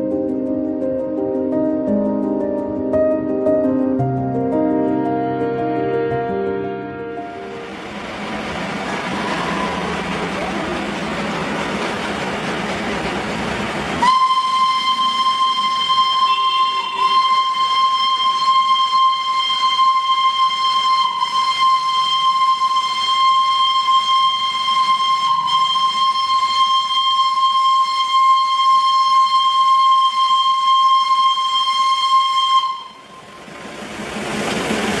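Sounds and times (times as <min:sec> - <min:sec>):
steam locomotive whistle: 0:07.2 - 0:11.0, 0:14.0 - 0:33.5
hiss of steam: 0:07.4 - 0:15.3.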